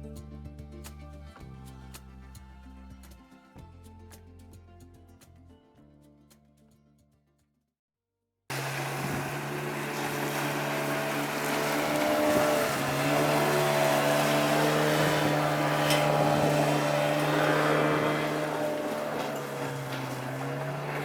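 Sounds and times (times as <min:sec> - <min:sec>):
engine running with low hum: 0:08.5 - 0:21.0.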